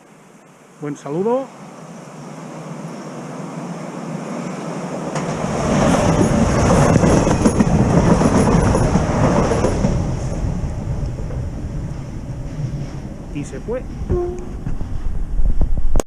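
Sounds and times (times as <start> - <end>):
electric train passing: 0.0 - 15.8
wheels clattering over rail joints: 5.1 - 15.1.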